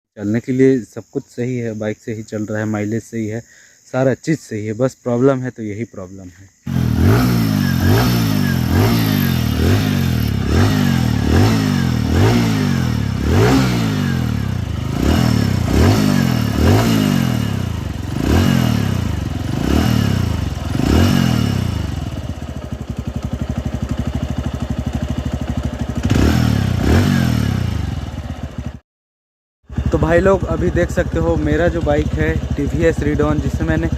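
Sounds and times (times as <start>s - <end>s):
motorcycle engine revving: 6.6s - 28.8s, 29.7s - 33.9s
motorcycle engine idling: 6.7s - 28.8s, 29.7s - 33.9s.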